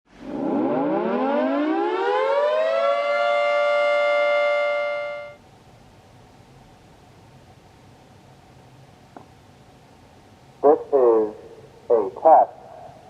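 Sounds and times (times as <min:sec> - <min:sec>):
outdoor warning siren: 0:00.1 - 0:05.4.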